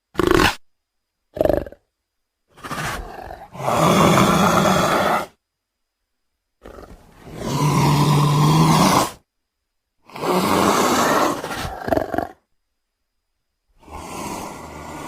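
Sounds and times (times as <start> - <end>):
leopard roaring: 2.5 - 5.4, 6.6 - 9.2, 10.1 - 12.4, 13.8 - 15.0.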